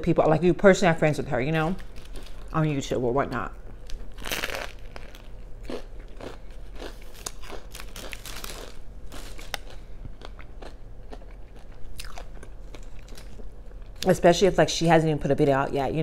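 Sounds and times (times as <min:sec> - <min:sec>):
chewing crunchy food: 0:03.3 - 0:14.1.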